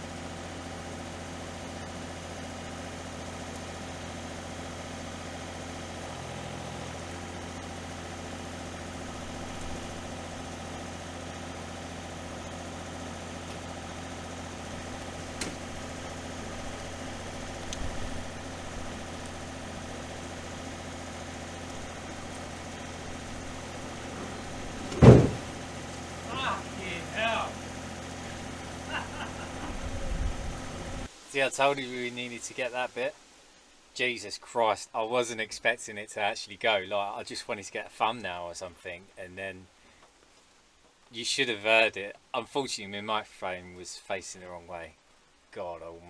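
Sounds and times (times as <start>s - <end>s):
diesel engine running: 0.0s - 31.2s
low thump: 24.1s - 25.7s.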